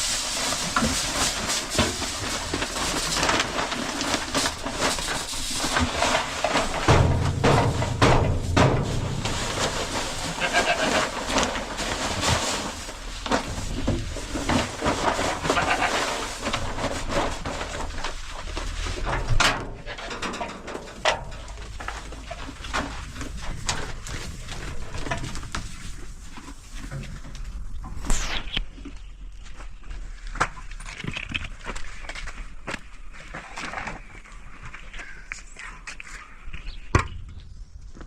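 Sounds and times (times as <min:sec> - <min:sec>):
knocks and clatter: 0:00.4 - 0:27.4
farm animals bleating: 0:10.2 - 0:11.2, 0:15.3 - 0:16.4.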